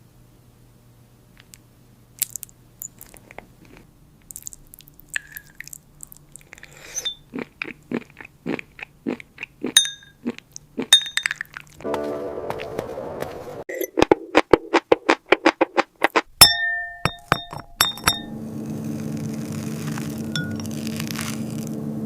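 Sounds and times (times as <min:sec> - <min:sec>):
crunching bites of brittle food: 0:02.2 - 0:11.8, 0:18.6 - 0:21.8
glassy clinks: 0:06.8 - 0:07.2, 0:09.8 - 0:10.2, 0:10.9 - 0:11.5, 0:16.4 - 0:18.3, 0:20.4 - 0:20.8.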